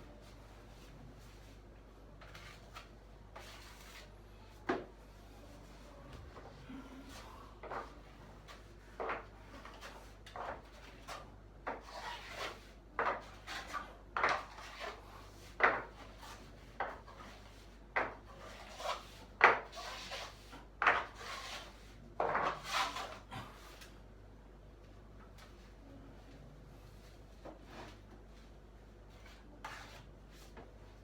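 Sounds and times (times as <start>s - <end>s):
hand tool scraping ceiling: 18.3s - 21.8s.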